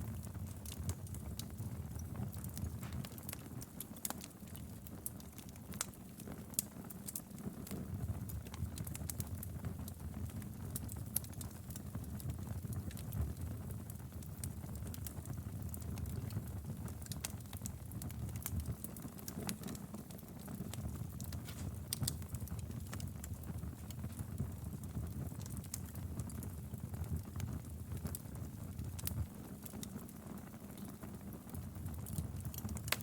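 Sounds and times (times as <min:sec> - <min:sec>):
low rumble of flames: 0:00.0 - 0:33.0
firewood popping and snapping: 0:20.5 - 0:23.1.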